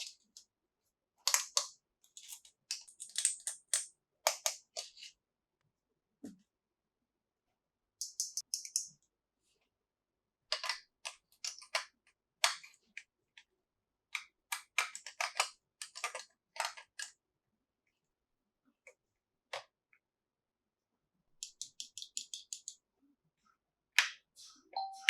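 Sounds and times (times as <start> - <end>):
plastic toys and packaging handled: 0.0 - 0.6, 1.2 - 5.2, 10.4 - 13.5, 14.1 - 17.2.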